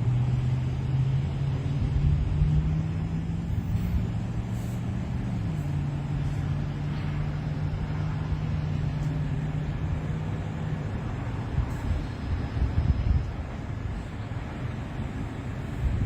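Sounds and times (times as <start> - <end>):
vehicle engine running: 0.0 - 16.0.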